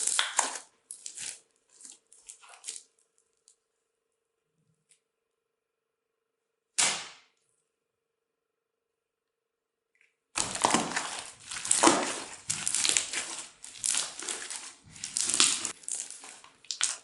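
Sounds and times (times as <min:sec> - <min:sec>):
crunchy slime crackling: 0:00.0 - 0:03.6, 0:10.4 - 0:17.0.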